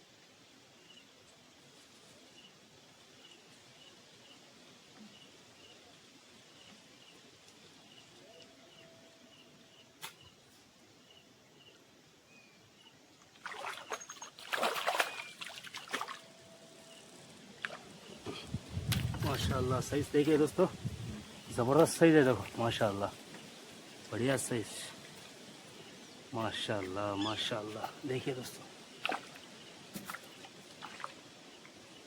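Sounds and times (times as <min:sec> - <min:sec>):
fish splashing in water: 0:13.4 - 0:16.3, 0:29.0 - 0:31.2
faint high chirp: 0:13.8 - 0:17.1
riverside ambience: 0:15.1 - 0:30.4.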